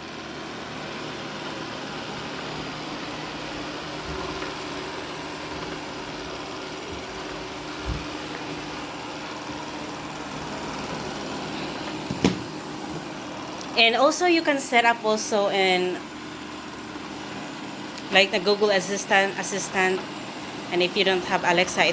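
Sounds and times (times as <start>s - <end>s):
robot vacuum motor hum: 0.0s - 13.6s
soft low thump: 7.8s - 8.4s.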